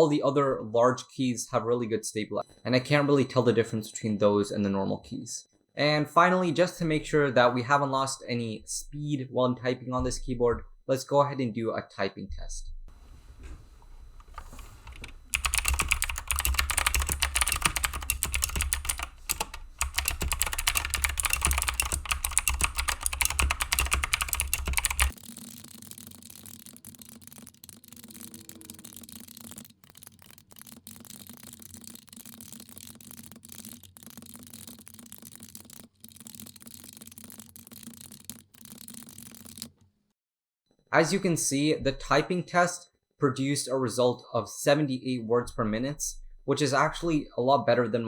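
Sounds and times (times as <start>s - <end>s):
mechanical keyboard typing: 14.3s - 39.8s.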